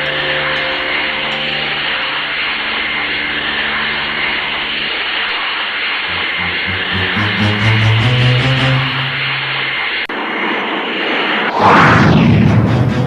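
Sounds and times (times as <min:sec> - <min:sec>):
low sustained music tones: 0:00.0 - 0:10.1
loud rushing noise effect: 0:02.8 - 0:13.0
low rhythmic pulses: 0:05.8 - 0:10.1.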